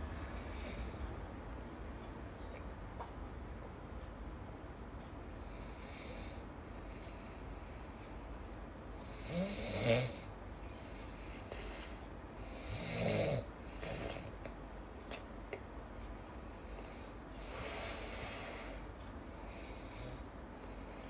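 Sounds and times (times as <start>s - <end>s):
person snoring: 9.2s - 10.3s, 12.6s - 14.3s.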